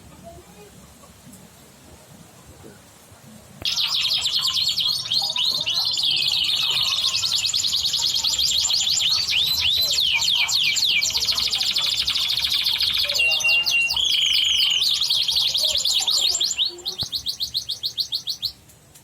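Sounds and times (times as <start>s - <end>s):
canary singing trills: 3.6s - 18.6s.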